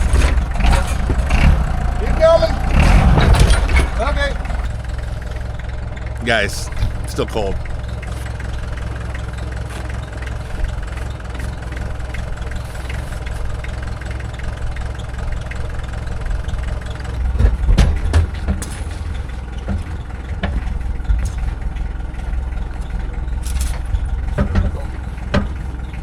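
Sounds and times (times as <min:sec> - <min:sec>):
engine idling: 0:00.0 - 0:26.0
metal clunks: 0:03.0 - 0:05.6, 0:16.4 - 0:25.8.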